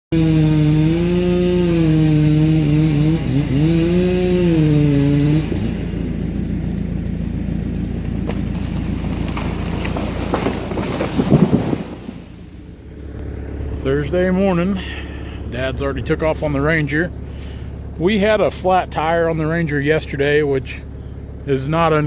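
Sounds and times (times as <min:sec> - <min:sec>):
chainsaw cutting: 0:00.1 - 0:13.9, 0:14.6 - 0:18.1
engine rumble: 0:00.1 - 0:22.0.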